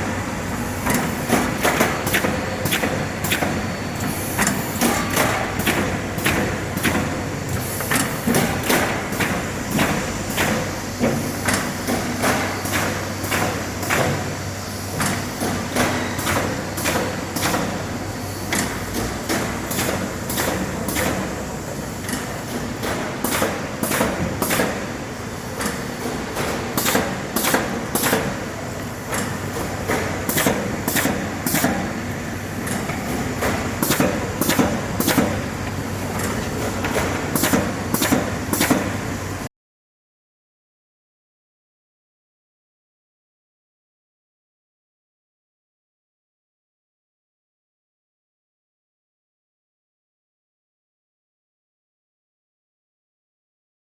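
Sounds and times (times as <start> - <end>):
machine clacking: 25.6 - 39.0.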